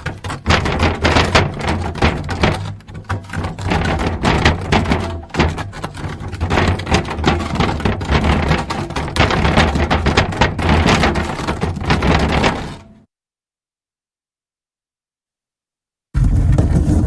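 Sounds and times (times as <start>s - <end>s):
wooden barrel dragged on ground: 0.0s - 13.0s, 16.2s - 17.0s.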